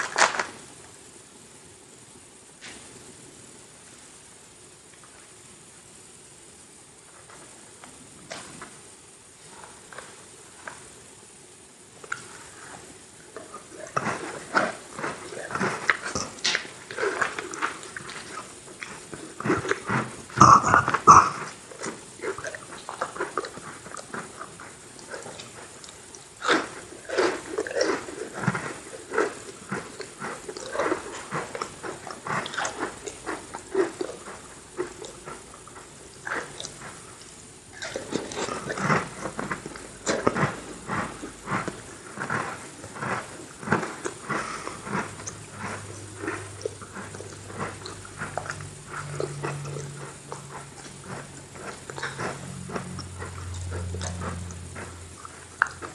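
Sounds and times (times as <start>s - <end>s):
cookie crunching: 0.0s - 0.6s, 12.0s - 55.9s
wet mouth clicks: 13.3s - 55.9s.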